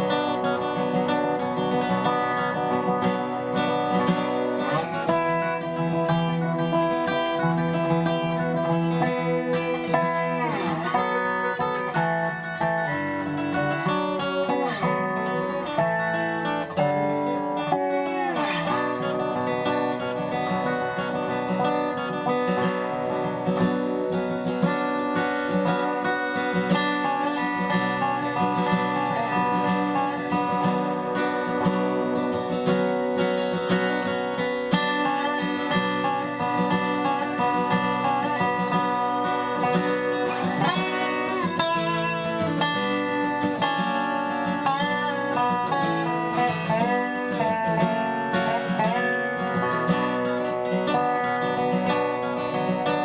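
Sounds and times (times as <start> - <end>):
resonator slide guitar tune: 0.0 - 53.0.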